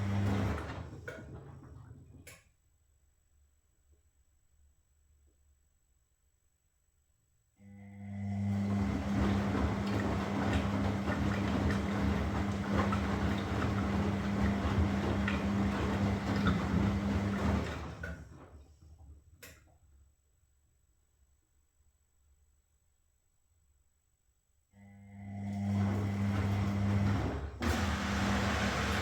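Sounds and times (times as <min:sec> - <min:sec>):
washing machine hum: 0:00.0 - 0:02.4, 0:07.7 - 0:20.0, 0:24.8 - 0:29.0
click: 0:19.4 - 0:19.6.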